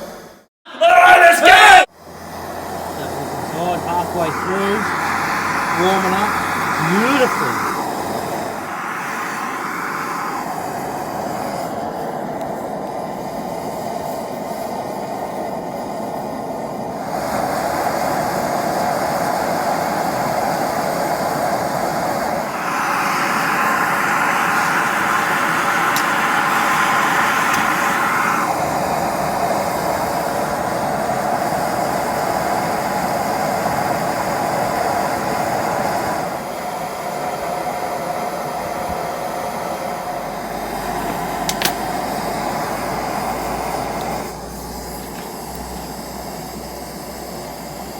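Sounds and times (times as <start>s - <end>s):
furnace gas burner roar: 0.0s - 47.9s.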